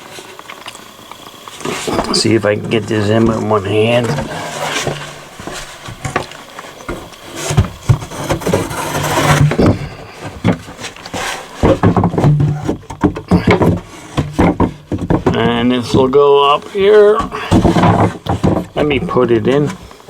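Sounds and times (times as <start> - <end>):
plywood knocking on wooden framing: 6.9 - 15.7.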